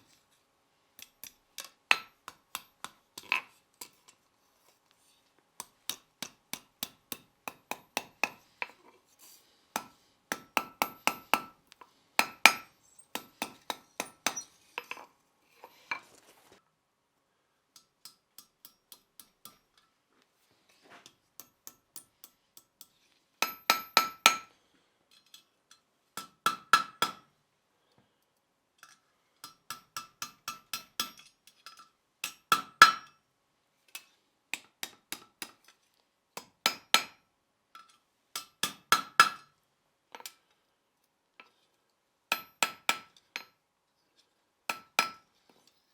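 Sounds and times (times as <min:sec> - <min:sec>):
hammer striking steel on anvil: 0:05.6 - 0:08.4, 0:09.8 - 0:11.6, 0:12.2 - 0:15.0, 0:17.8 - 0:19.6, 0:23.4 - 0:24.5, 0:26.2 - 0:27.2, 0:29.4 - 0:33.2, 0:38.4 - 0:39.4, 0:42.3 - 0:43.5, 0:44.7 - 0:45.2.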